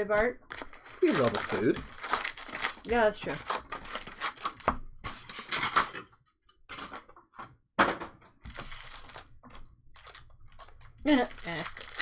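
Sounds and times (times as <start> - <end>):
foil wrappers rustling: 0.4 - 5.8, 8.5 - 12.0.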